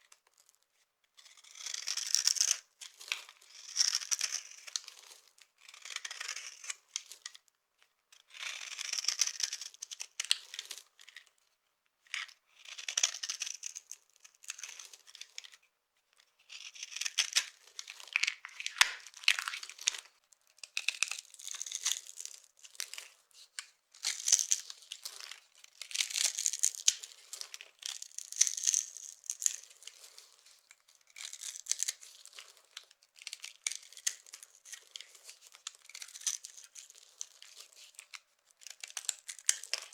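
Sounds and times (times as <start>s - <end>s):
dry soap crunching: 5.6s - 6.5s, 8.3s - 10.8s, 16.5s - 39.9s.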